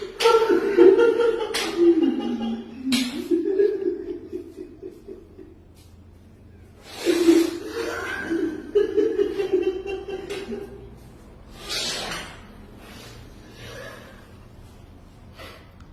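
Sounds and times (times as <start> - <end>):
person laughing: 0.0 - 5.9, 6.9 - 11.0.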